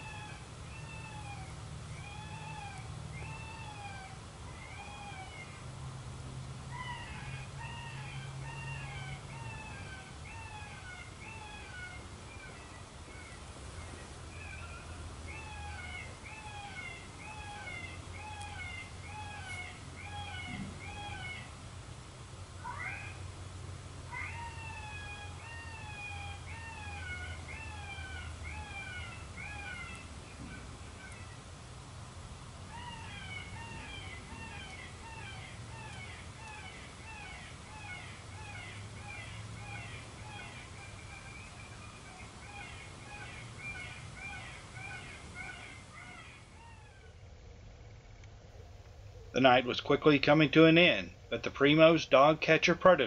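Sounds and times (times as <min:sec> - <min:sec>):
electronic predator call cries: 0:00.0 - 0:05.6, 0:14.3 - 0:21.6, 0:22.6 - 0:23.3, 0:24.1 - 0:31.4, 0:32.7 - 0:47.2.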